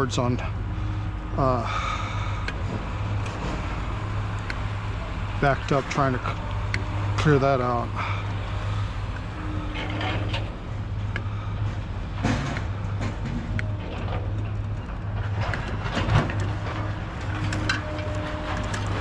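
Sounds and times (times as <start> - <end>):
low engine hum: 0.0 - 19.0
scrap clicking and knocking: 9.1 - 19.0.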